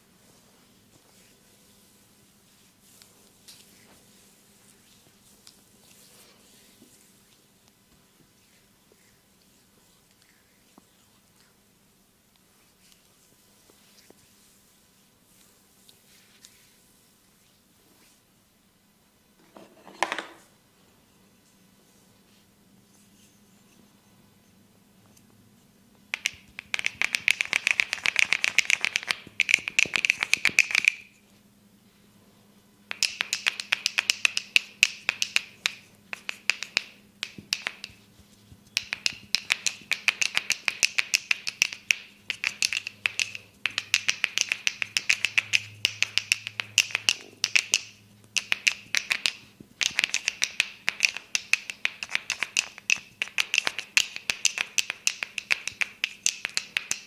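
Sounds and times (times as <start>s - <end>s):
hands tapping head: 26.1s - 31.1s, 32.9s - 57.0s.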